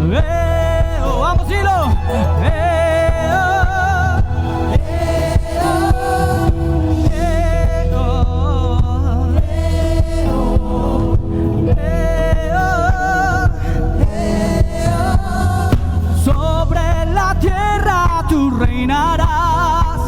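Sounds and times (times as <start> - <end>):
bass line: 0.0 - 20.0
people singing: 0.0 - 20.0
drum beat: 0.8 - 7.4.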